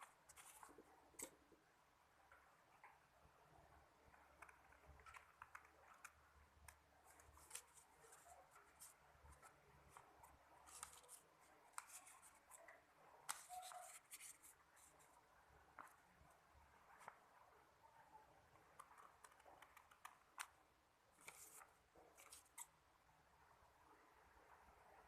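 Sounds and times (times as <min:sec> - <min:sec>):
paper rustling and crinkling: 0:07.1 - 0:15.1, 0:21.2 - 0:22.7.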